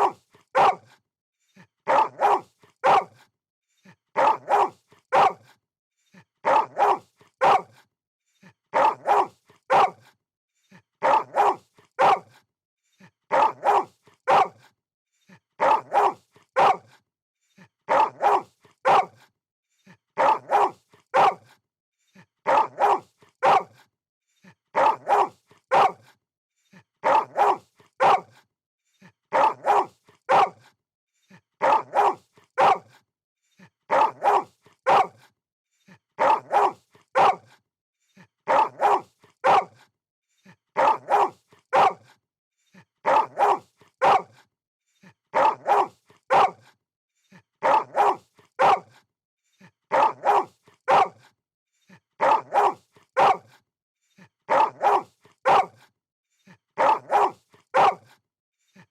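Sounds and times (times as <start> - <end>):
dog barking: 0.0 - 1.0, 1.8 - 3.3, 4.2 - 5.5, 6.4 - 7.9, 8.7 - 10.2, 11.0 - 12.4, 13.3 - 14.7, 15.6 - 17.0, 17.9 - 19.3, 20.2 - 21.6, 22.4 - 23.9, 24.7 - 26.2, 27.0 - 28.4, 29.3 - 30.7, 31.6 - 33.0, 33.9 - 35.3, 36.2 - 37.6, 38.5 - 39.9, 40.8 - 42.1, 43.0 - 44.4, 45.3 - 46.8, 47.6 - 49.0, 49.9 - 51.3, 52.2 - 53.6, 54.5 - 55.9, 56.8 - 58.2.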